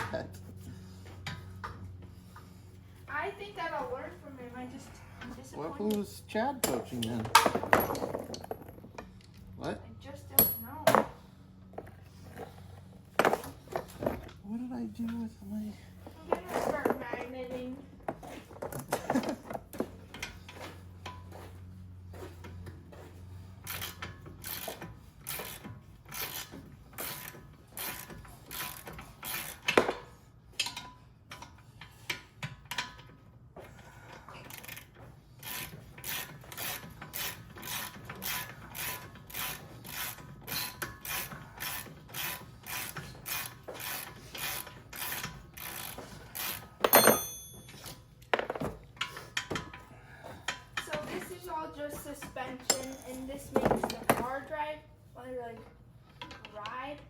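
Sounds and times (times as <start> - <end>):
ratchet wrench clicking: 23.6 - 30.0, 34.5 - 47.9.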